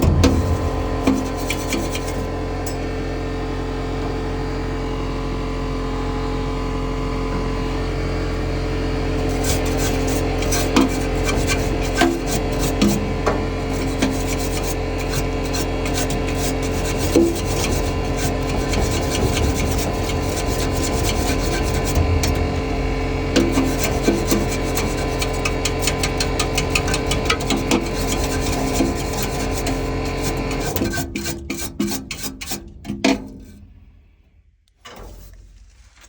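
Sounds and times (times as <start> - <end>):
blower wheel being scraped: 0.0 - 2.9, 9.2 - 33.8
steady hum: 0.0 - 34.3.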